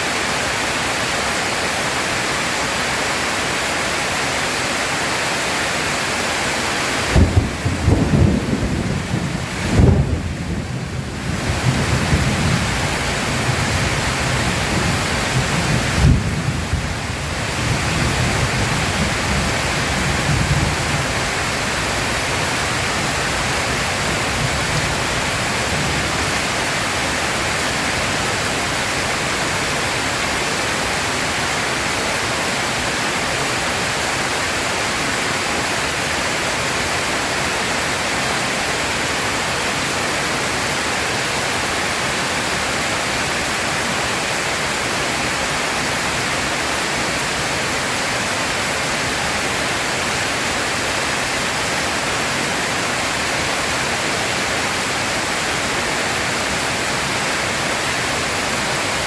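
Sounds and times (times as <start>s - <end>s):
heavy rain hissing: 0.0s - 59.0s
low thunder rumble: 7.1s - 26.6s.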